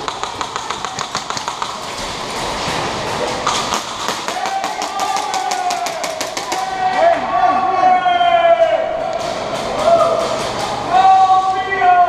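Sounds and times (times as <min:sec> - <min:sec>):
airsoft guns firing: 0:00.0 - 0:02.2, 0:03.4 - 0:07.0.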